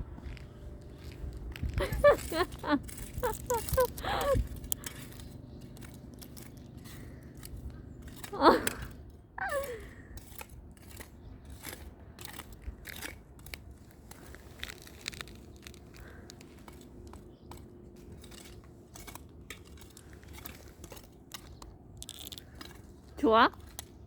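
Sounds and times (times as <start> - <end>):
cat rustling in soil and leaves: 13.6 - 17.1.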